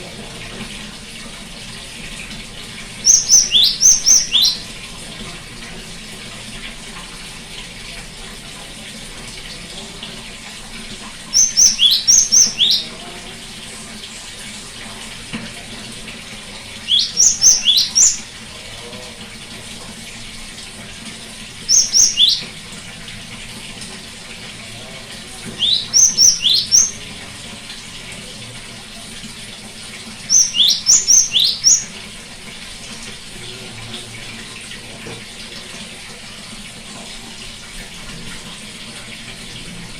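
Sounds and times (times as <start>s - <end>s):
great tit singing: 3.0s - 4.7s, 11.3s - 13.0s, 16.8s - 18.4s, 21.6s - 22.5s, 25.5s - 27.1s, 30.2s - 32.0s.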